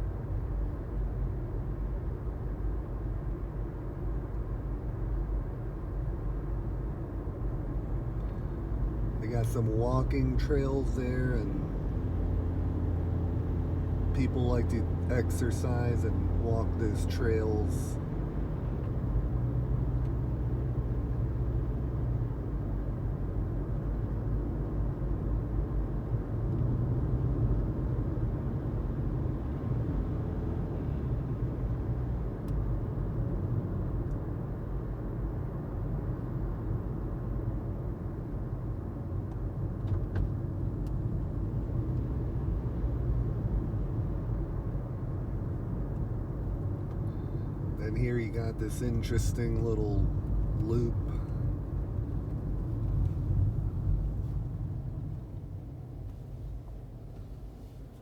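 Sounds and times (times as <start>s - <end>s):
car engine and tyre rumble: 0.0s - 58.0s.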